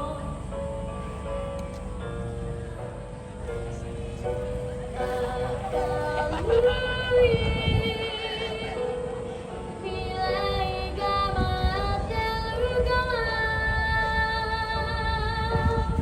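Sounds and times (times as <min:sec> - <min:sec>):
melody of long held notes: 0:00.0 - 0:16.0.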